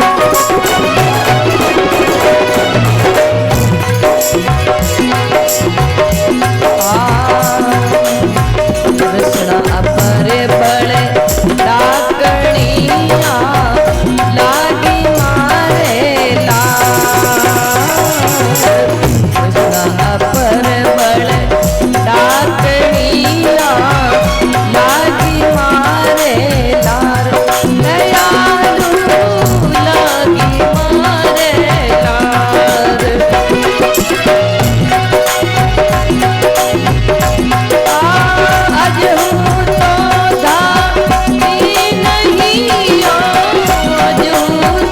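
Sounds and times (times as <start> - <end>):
gliding melody line: 0.0 - 4.8
hand drums: 0.0 - 44.9
rattling percussion: 0.0 - 44.9.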